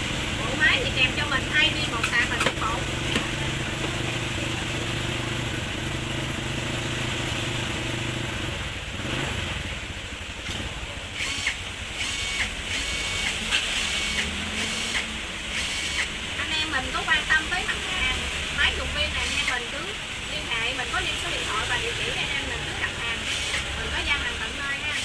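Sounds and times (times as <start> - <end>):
motor humming: 11.2 - 16.5.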